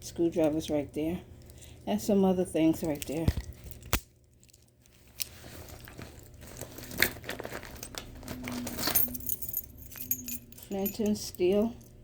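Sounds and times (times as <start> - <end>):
crinkling and rustling: 2.7 - 11.7.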